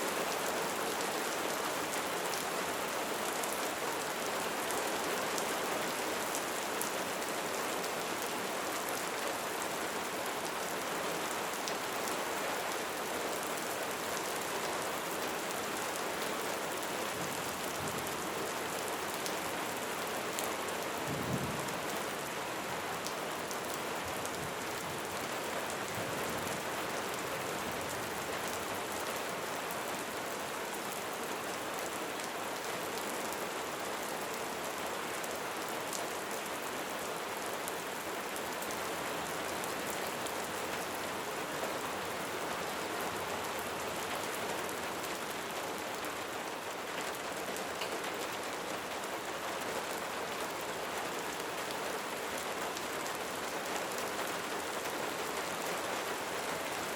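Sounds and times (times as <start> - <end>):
light rain falling: 0.0 - 56.9.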